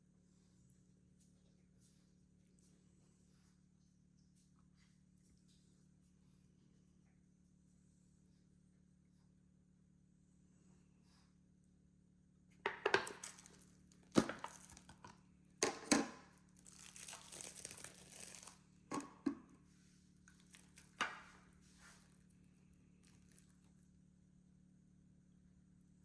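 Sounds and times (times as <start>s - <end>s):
material crinkling and rustling: 12.7s - 15.2s, 15.8s - 23.8s.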